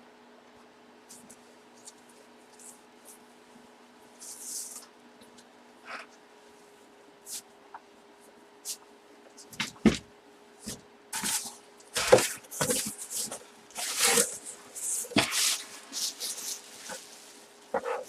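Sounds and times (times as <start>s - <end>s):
cards and packaging rustling: 11.2s - 18.0s.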